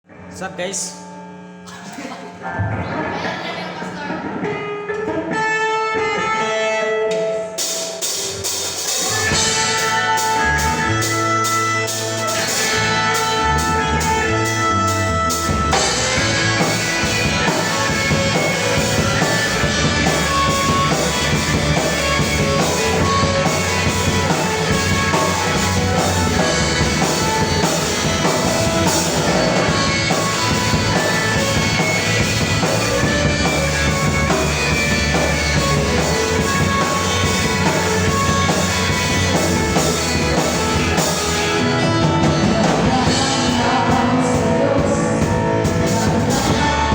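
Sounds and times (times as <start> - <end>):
live band with drums and guitar: 1.6 - 46.9.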